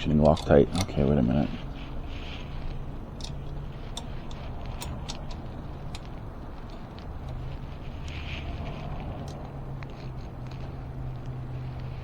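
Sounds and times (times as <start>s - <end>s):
hand tools clicking: 0.0s - 2.0s, 2.6s - 8.2s
steady low hum: 0.0s - 12.0s.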